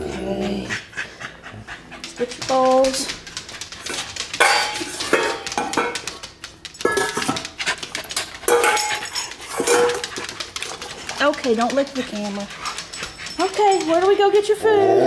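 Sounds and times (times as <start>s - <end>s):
dog bowls clattering: 2.0s - 14.8s.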